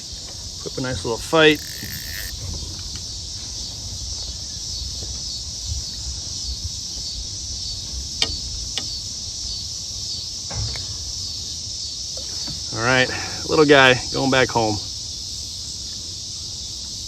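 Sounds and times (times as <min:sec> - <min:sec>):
insects shrilling: 0:00.5 - 0:04.8
sharp clicks: 0:01.2 - 0:02.5.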